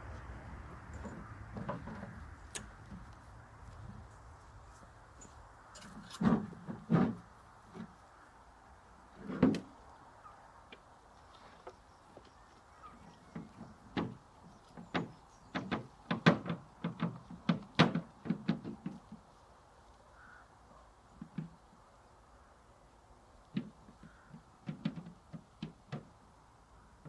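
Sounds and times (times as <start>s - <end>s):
wooden knocks and taps: 1.0s - 3.2s, 13.3s - 19.2s, 23.5s - 26.2s.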